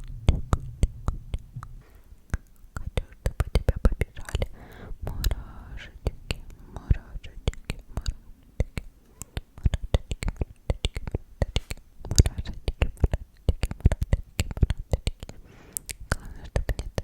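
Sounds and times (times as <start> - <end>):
breathy whisper: 0.0 - 8.3, 15.3 - 16.9.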